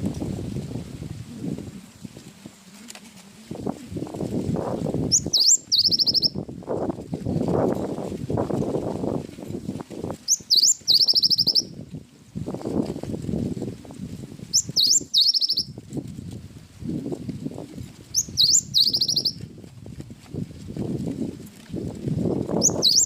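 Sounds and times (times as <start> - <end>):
bird singing whistles and trill: 5.1 - 6.4, 10.3 - 11.8, 14.5 - 15.8, 18.1 - 19.4, 22.6 - 23.0.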